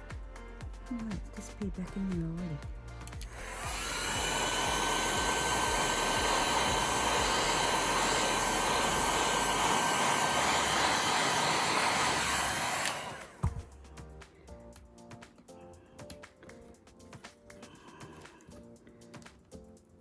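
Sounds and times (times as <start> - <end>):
heat gun blowing: 3.1 - 13.5.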